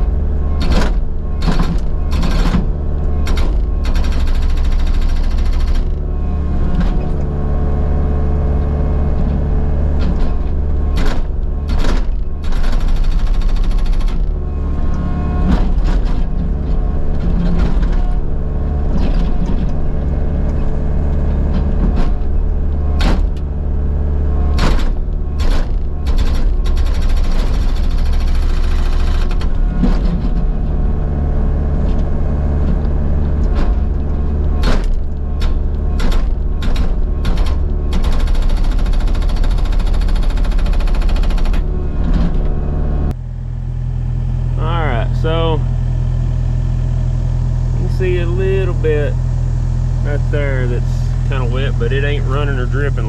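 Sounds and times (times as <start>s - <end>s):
excavator diesel engine running: 0.0s - 53.0s.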